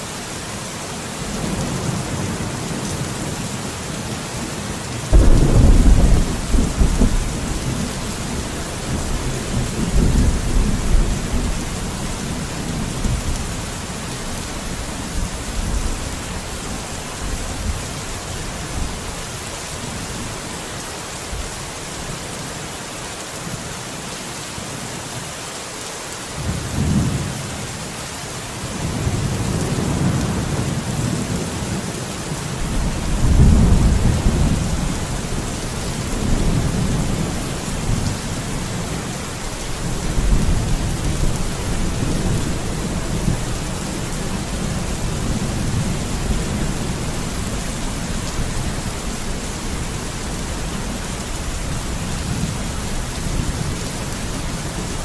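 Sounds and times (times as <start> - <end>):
steady rain: 0.0 - 55.0
thunder rumbling: 5.1 - 16.8, 32.6 - 55.0.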